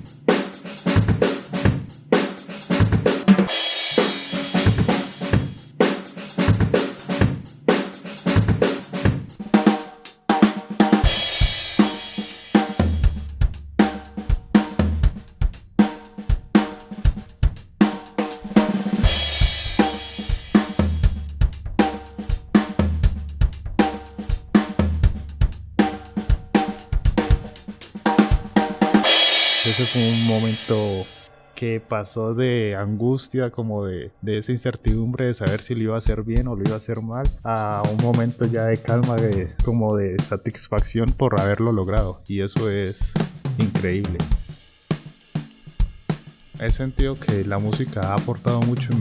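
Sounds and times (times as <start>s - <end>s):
snare and bass drum: 2.8s - 7.4s, 8.4s - 31.2s, 34.9s - 49.0s
cymbal crashes: 3.3s - 5.6s, 9.6s - 23.0s, 25.8s - 32.0s
low bass notes: 12.8s - 15.3s, 19.0s - 26.2s.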